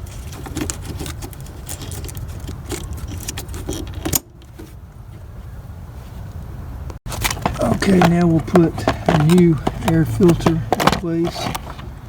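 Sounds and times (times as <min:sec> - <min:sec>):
parts clicking and rattling: 0:00.0 - 0:04.7, 0:07.0 - 0:12.0.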